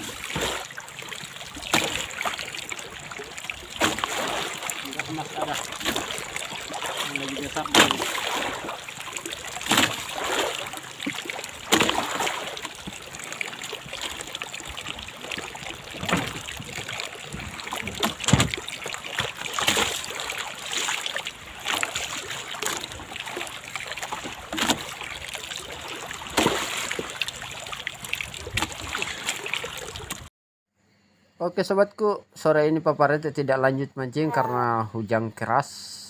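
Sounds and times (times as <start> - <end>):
water splashing against boat: 0.0 - 30.3
knocks on hull: 3.8 - 8.8, 9.6 - 13.0, 15.9 - 20.0.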